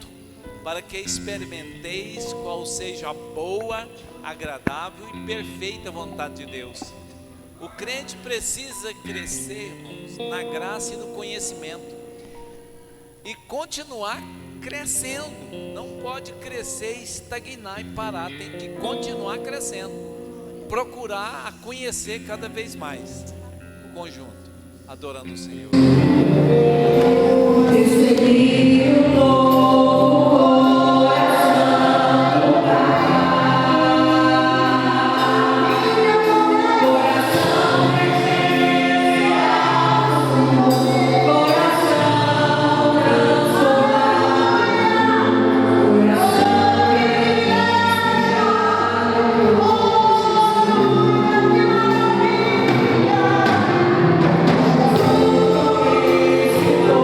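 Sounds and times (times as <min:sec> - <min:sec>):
band accompaniment: 0:25.8 - 0:57.0
group singing worship song: 0:25.8 - 0:57.0.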